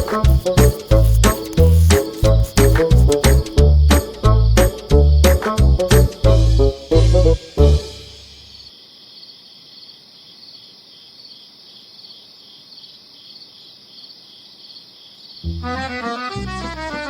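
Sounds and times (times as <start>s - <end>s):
crickets chirping: 0.0s - 5.3s, 7.8s - 15.5s
music: 0.0s - 8.5s, 15.5s - 17.0s.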